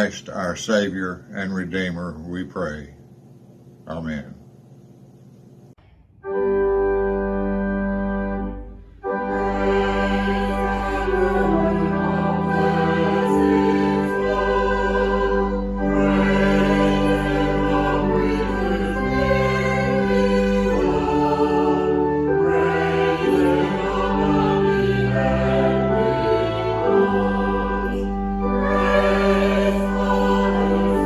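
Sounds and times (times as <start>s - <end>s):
choir singing held chords: 7.0s - 31.0s.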